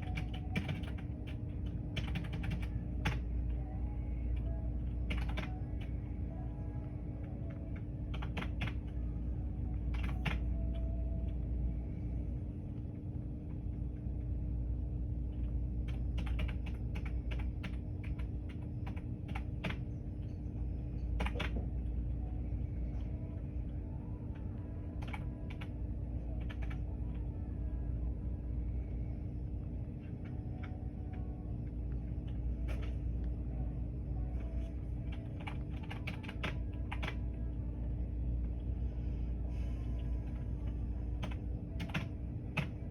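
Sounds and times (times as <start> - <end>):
keyboard typing: 0.0 - 3.3, 5.0 - 5.9, 7.5 - 9.0, 9.9 - 10.8, 15.4 - 19.9, 21.0 - 21.7, 25.0 - 25.8, 26.4 - 26.9, 34.6 - 37.3, 40.2 - 42.9
low hum: 0.0 - 42.9.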